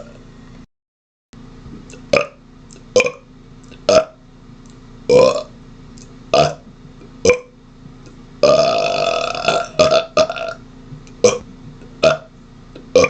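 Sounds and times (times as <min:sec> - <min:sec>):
man burping: 0:08.4 - 0:10.6, 0:11.2 - 0:11.4, 0:12.0 - 0:12.3.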